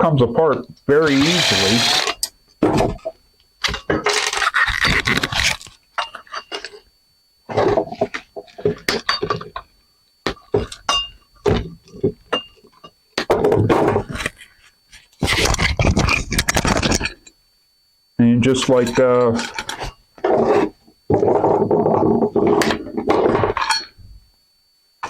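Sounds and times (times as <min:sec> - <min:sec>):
ringing metal pings: 0:05.8 - 0:06.9, 0:07.8 - 0:14.6, 0:21.1 - 0:24.2.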